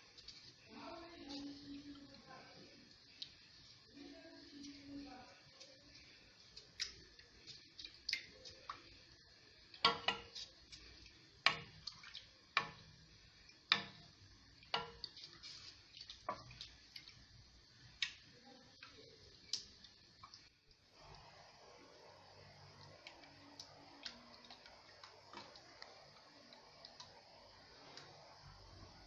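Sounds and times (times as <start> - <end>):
ladle knocking and scraping a pot: 9.8 - 10.5, 13.7 - 16.6.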